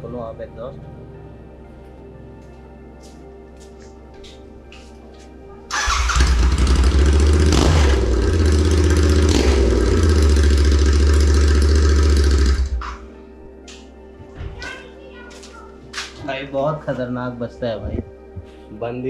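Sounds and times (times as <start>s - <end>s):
loud motorcycle engine running: 5.8s - 12.9s.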